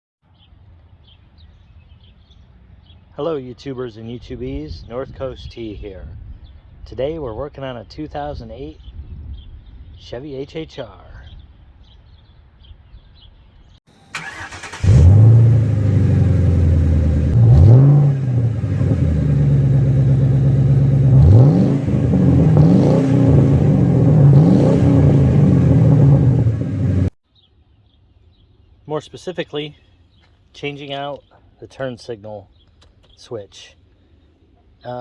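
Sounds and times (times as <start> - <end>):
car engine starting: 14.1 - 27.1
car engine revving: 14.2 - 27.1.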